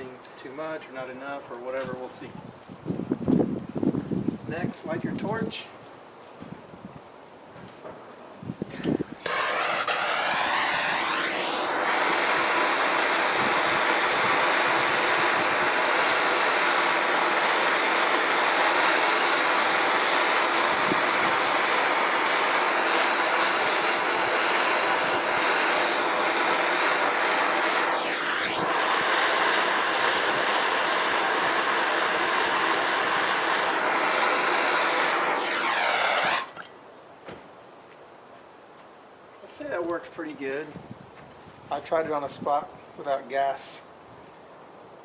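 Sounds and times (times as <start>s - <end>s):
torch flame hissing: 8.8s - 36.7s.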